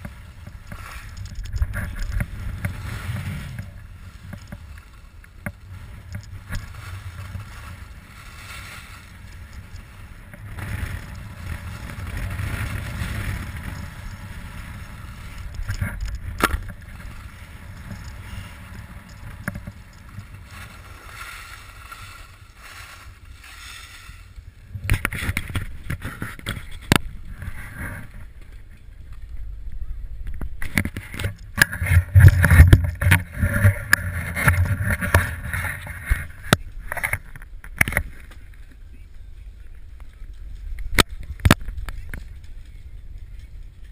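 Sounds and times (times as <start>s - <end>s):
skis hissing and scraping on snow: 0.0s - 28.1s
wind rumble on microphone: 0.0s - 43.9s.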